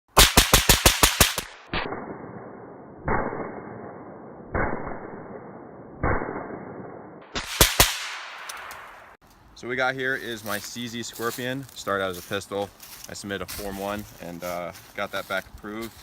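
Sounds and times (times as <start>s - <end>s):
sharp gunshots: 0.1s - 9.2s
suppressed gunshots: 0.2s - 9.2s.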